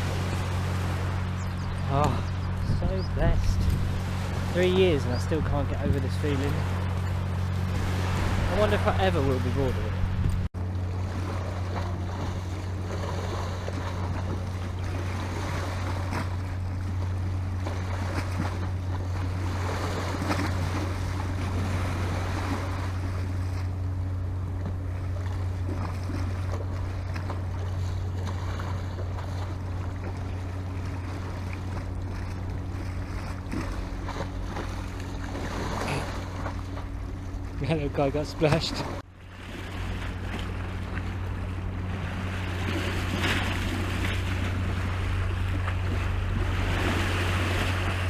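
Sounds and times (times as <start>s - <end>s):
wind rumble on microphone: 0.0s - 37.6s
sea waves washing on shore: 0.0s - 48.0s.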